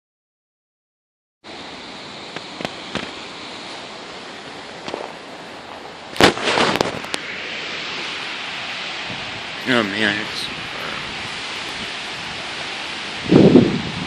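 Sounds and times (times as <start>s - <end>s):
strong wind blowing: 1.6s - 14.0s
sharp pops and cracks: 2.3s - 3.2s, 4.8s - 5.2s, 6.1s - 7.2s.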